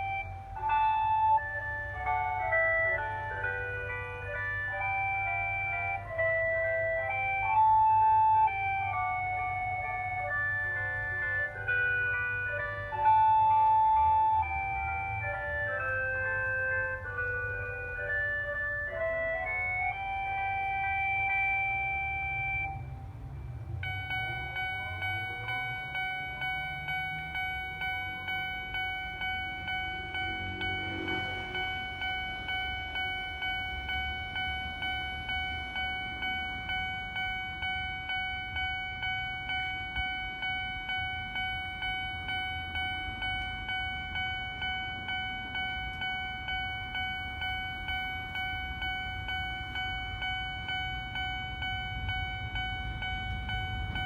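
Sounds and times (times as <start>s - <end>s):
level crossing alarm bell: 0.0s - 54.0s.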